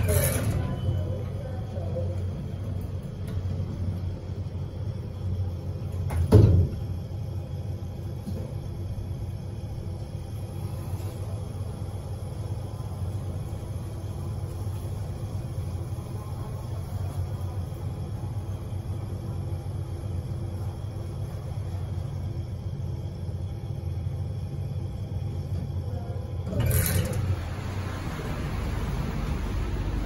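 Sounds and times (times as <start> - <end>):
lift running rumble: 15.2 - 30.0.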